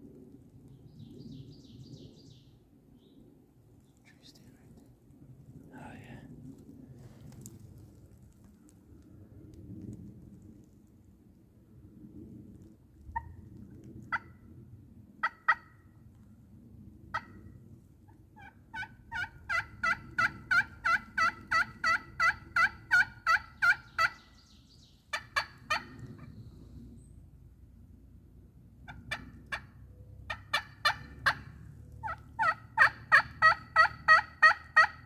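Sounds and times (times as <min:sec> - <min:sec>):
turkey yelping: 0:14.1 - 0:14.3, 0:15.2 - 0:15.7, 0:17.1 - 0:17.4, 0:18.4 - 0:24.2, 0:25.1 - 0:26.3, 0:28.9 - 0:29.7, 0:30.3 - 0:35.0
turkey clucking: 0:15.2 - 0:15.7, 0:17.1 - 0:17.4, 0:18.4 - 0:24.2, 0:25.1 - 0:26.3, 0:28.8 - 0:29.7, 0:30.3 - 0:35.0.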